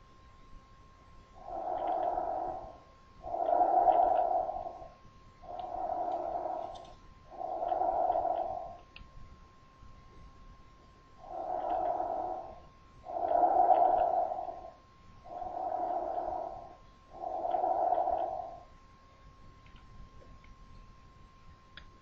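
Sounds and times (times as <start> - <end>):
breath sounds through a stethoscope: 5.5 - 8.8, 11.2 - 18.6.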